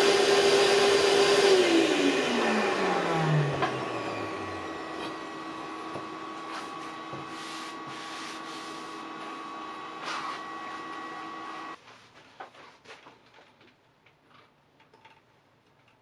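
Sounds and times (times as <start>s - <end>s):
circular saw motor winding down: 0.0s - 11.8s.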